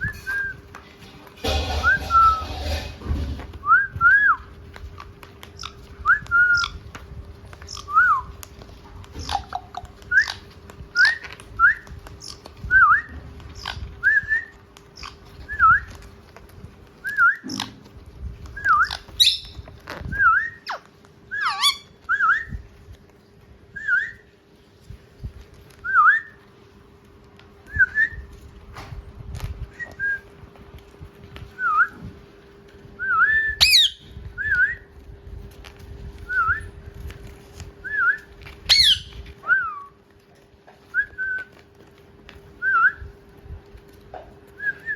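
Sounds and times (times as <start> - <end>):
clicks and rustles: 0.0 - 21.2, 24.6 - 33.0, 34.2 - 44.9
parrots whistling: 5.6 - 6.8, 9.2 - 15.9, 18.6 - 22.6, 33.0 - 34.9, 37.9 - 40.0
shrill parrot calls: 20.4 - 22.5, 33.6 - 34.1, 38.7 - 39.9.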